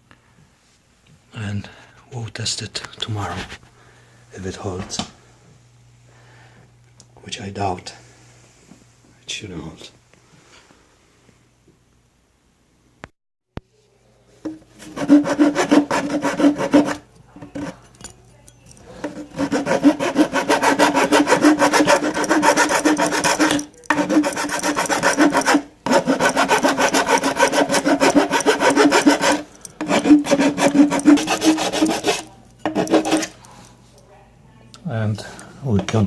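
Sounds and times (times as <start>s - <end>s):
abrading plastic pipe: 19.0s - 33.4s.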